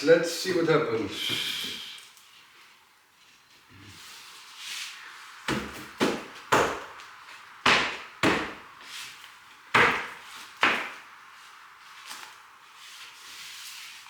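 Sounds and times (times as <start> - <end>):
sharp knocks on floorboards: 5.5 - 7.0, 7.6 - 8.6, 9.7 - 11.0.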